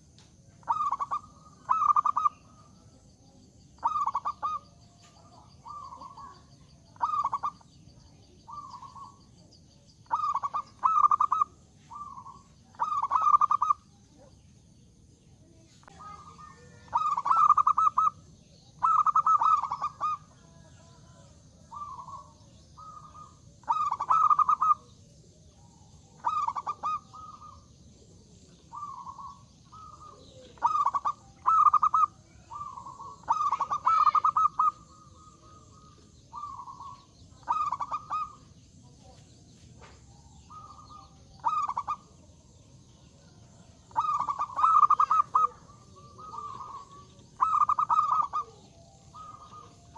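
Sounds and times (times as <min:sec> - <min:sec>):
dove cooing: 0:00.6 - 0:03.0, 0:03.8 - 0:09.4, 0:10.0 - 0:14.3, 0:15.8 - 0:39.2, 0:39.8 - 0:49.9.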